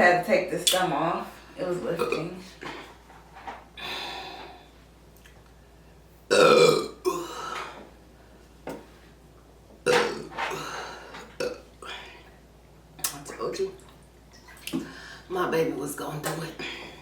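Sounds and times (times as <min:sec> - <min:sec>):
woman burping loudly: 0:02.0 - 0:02.4, 0:06.3 - 0:07.7, 0:09.9 - 0:12.1.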